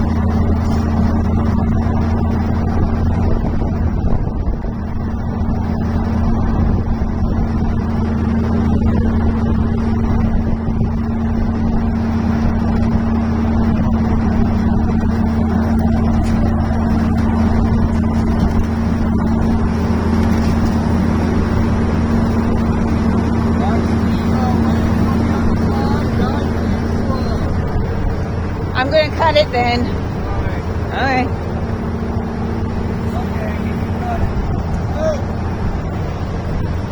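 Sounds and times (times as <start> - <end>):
engine humming steadily: 0.0 - 36.9.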